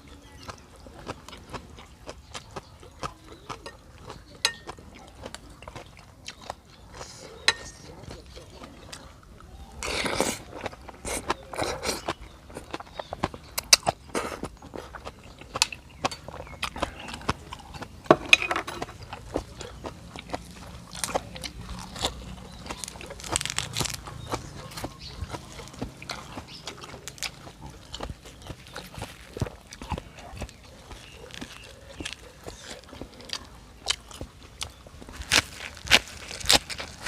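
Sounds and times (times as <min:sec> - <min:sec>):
person chewing and slurping: 0:08.8 - 0:37.0.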